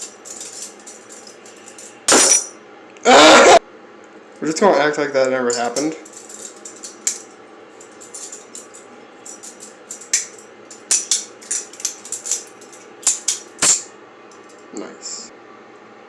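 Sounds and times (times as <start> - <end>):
butterfly knife clicking and rattling: 0.0 - 2.4, 5.5 - 14.5.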